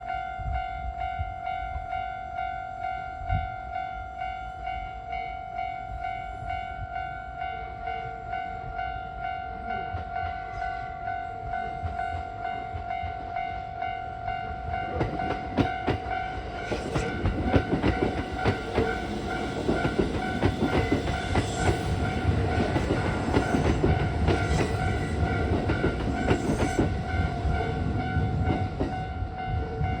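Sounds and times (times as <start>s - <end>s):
electric train rumbling: 0.0s - 30.0s
train wheels clattering on rails: 14.7s - 30.0s.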